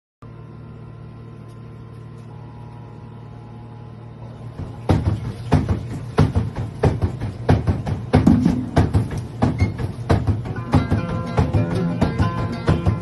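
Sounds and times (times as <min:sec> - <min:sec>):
steady low hum: 0:00.2 - 0:13.0
drum-like knocks on washing machine: 0:04.5 - 0:13.0.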